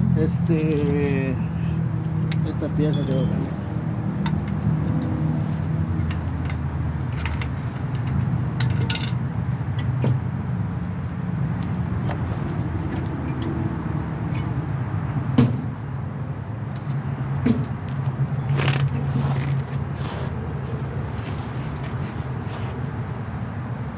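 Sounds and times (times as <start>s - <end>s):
hand tools clinking on metal: 2.3s - 4.7s, 6.0s - 10.3s, 12.1s - 13.7s, 14.3s - 14.6s.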